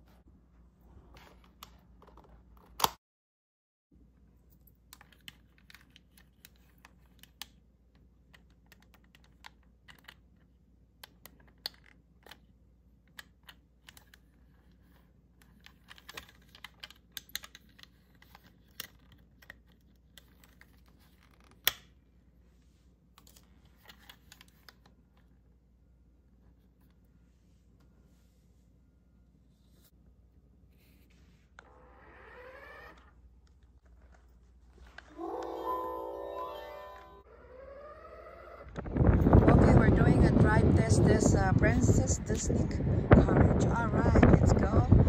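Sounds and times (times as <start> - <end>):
toy packaging clicks and taps: 15.4 - 21.8.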